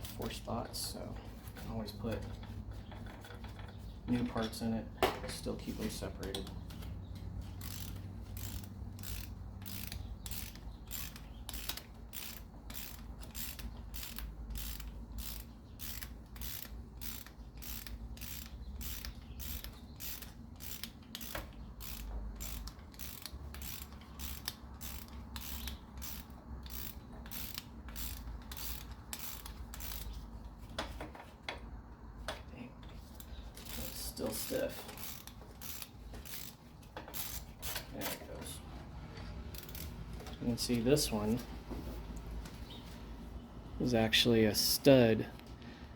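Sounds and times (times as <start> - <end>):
ratchet wrench clicking: 7.4 - 30.3, 33.2 - 38.2, 39.5 - 40.0.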